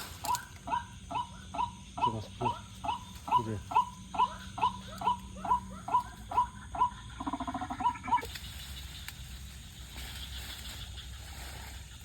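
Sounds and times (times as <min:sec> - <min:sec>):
waterhen calling: 0:00.0 - 0:08.8
low background hum: 0:00.0 - 0:12.0.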